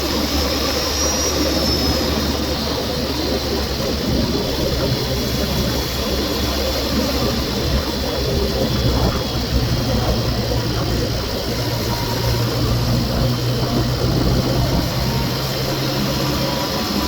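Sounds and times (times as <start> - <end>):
car engine running: 0.0 - 17.0
high thin whistle: 0.7 - 2.5.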